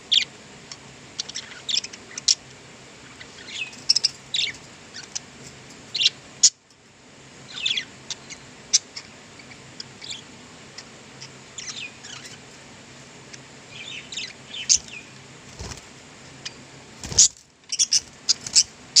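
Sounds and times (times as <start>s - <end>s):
faint low hum: 0.0s - 19.0s
budgerigars chirping: 1.2s - 2.4s, 3.0s - 5.3s, 7.5s - 12.5s, 13.3s - 15.8s, 16.4s - 19.0s.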